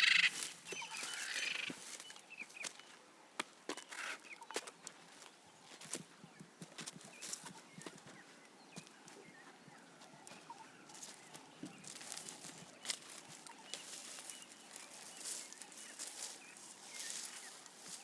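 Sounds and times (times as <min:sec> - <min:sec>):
leaves and twigs rustling: 0:00.0 - 0:03.0, 0:10.0 - 0:18.0
birds chirping: 0:00.0 - 0:18.0.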